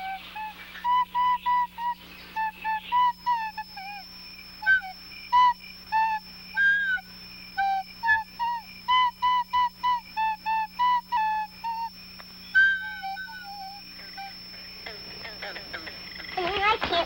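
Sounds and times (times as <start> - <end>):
flute-like instrument playing tune: 0.0 - 15.0
faint steady hum: 0.0 - 17.0
high-pitched whine: 0.0 - 17.0.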